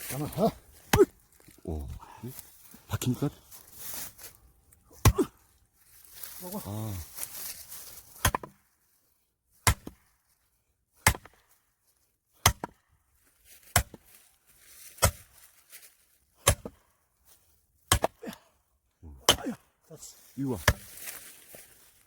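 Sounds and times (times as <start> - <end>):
axe chopping wood: 0.2 - 1.2, 5.0 - 5.4, 8.2 - 8.6, 9.5 - 10.1, 11.0 - 11.5, 12.4 - 12.8, 13.6 - 14.2, 14.8 - 15.4, 16.4 - 16.8, 17.8 - 18.4, 19.1 - 19.6, 20.6 - 21.0.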